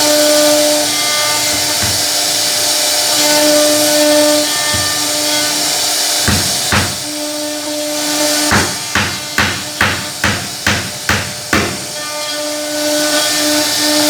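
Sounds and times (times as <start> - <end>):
router spindle cutting wood: 0.0 - 14.0
sharp knocks: 1.4 - 2.5, 4.4 - 5.5, 6.2 - 7.1, 8.4 - 12.0.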